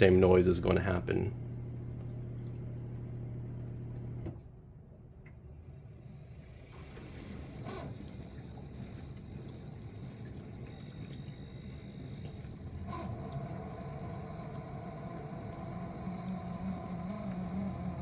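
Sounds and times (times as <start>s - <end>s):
pump motor droning grind: 6.5s - 18.0s
water running and splashing: 6.9s - 18.0s.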